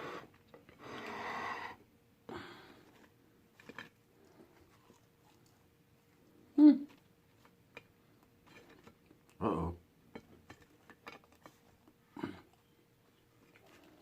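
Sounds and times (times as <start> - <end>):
man saying uh-oh: 9.4 - 9.8.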